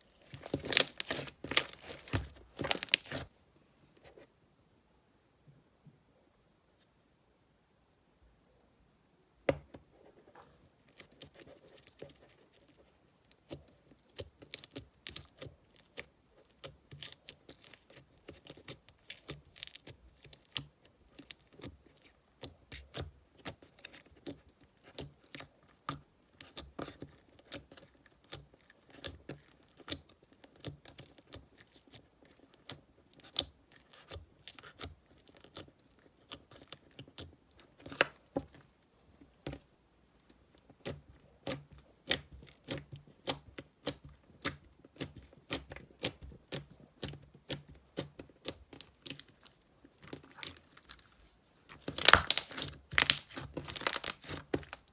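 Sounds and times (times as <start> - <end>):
slime squeezed by hand: 50.1 - 54.8.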